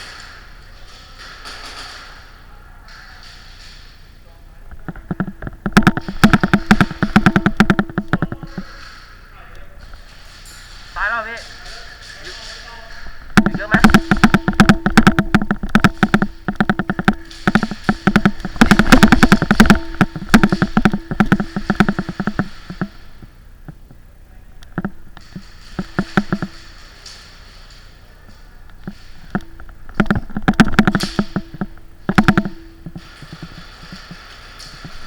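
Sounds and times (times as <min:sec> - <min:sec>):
airsoft guns firing bursts: 0:04.9 - 0:09.0, 0:13.0 - 0:23.2.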